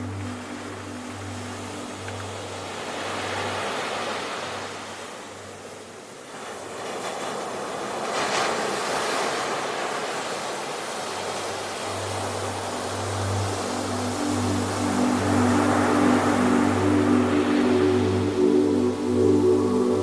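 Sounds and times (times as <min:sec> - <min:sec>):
sea surf washing ashore: 0:00.0 - 0:20.0.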